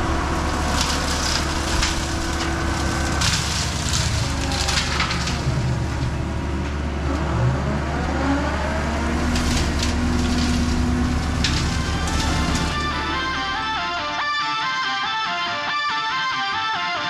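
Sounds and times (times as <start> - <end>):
wood cracking and snapping: 0.0 - 7.3, 8.6 - 13.8
hydraulic brush cutter: 0.0 - 14.6
diesel engine running: 0.0 - 16.7.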